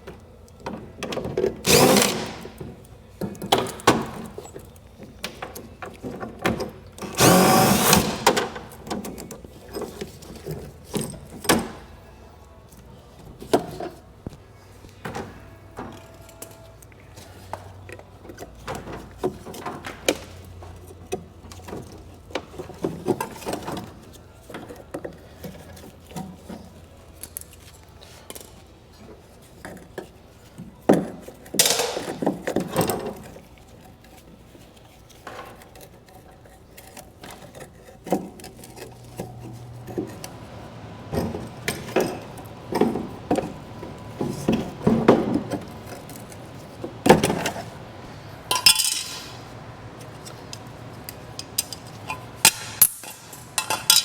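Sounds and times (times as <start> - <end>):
metal tools knocking and clinking: 48.5 - 49.5, 51.3 - 54.0
metal clatter: 48.5 - 49.6, 51.3 - 54.0.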